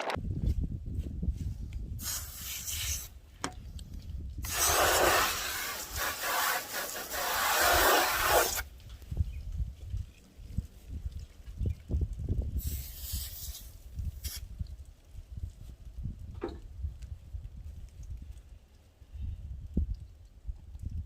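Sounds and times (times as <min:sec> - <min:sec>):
sandpaper rubbing plastic: 0:02.0 - 0:03.1, 0:04.4 - 0:08.6.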